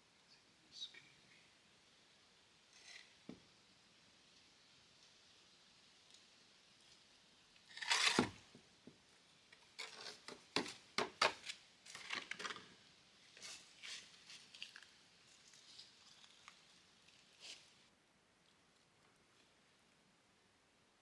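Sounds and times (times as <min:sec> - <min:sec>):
tool scraping masonry: 0:07.7 - 0:08.6, 0:09.7 - 0:12.7.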